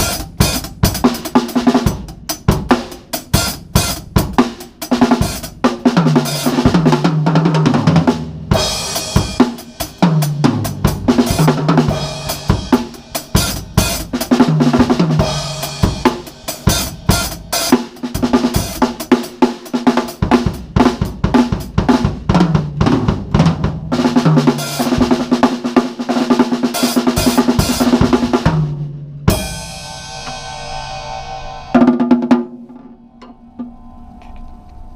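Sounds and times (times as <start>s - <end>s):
drum kit playing: 0.0s - 33.9s
crash cymbal ringing: 29.4s - 31.8s, 32.7s - 34.9s.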